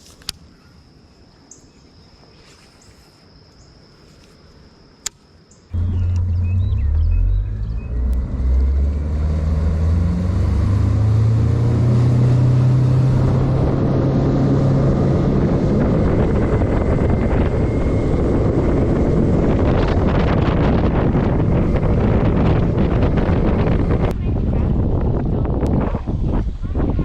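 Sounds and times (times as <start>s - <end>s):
boat motor: 5.8s - 25.7s
water noise: 5.8s - 27.0s
wind buffeting microphone: 5.8s - 27.0s.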